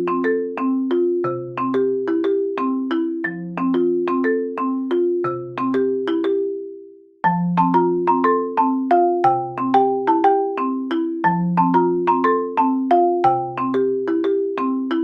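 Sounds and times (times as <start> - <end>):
mallet percussion tune: 0.0 - 15.0.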